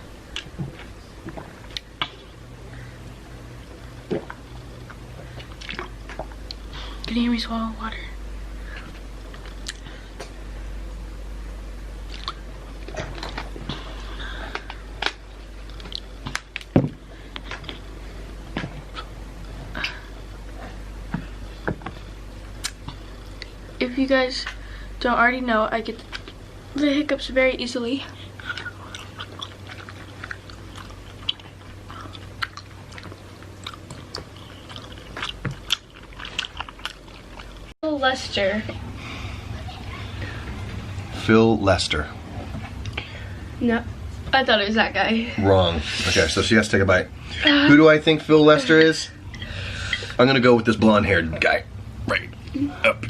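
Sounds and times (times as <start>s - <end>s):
low steady hum: 0.0s - 53.0s
person chewing food: 0.3s - 7.1s, 8.7s - 10.3s, 12.0s - 23.6s, 28.3s - 37.8s
mouth and throat clicks: 22.6s - 23.5s.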